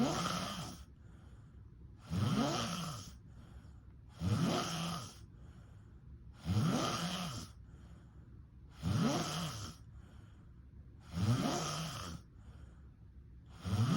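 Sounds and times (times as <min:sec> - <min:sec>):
person snoring: 0:00.0 - 0:00.9, 0:02.0 - 0:03.2, 0:04.1 - 0:05.3, 0:06.4 - 0:07.6, 0:08.7 - 0:09.9, 0:11.0 - 0:12.3, 0:13.5 - 0:13.9
quiet breaths: 0:00.0 - 0:13.9.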